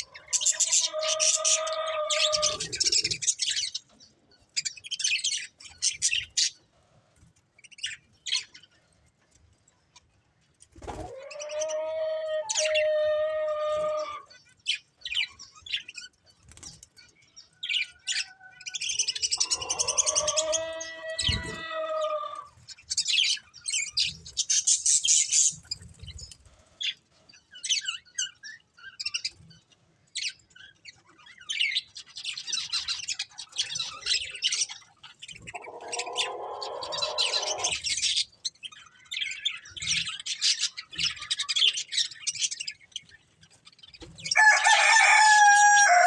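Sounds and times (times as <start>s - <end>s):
budgerigars chirping: 30.2s - 43.1s
low warbling bird call: 35.5s - 37.9s.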